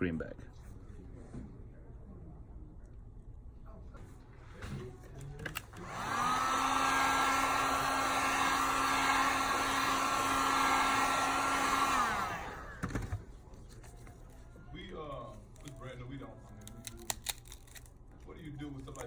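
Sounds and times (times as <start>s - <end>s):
heat gun motor whining: 5.5s - 13.1s.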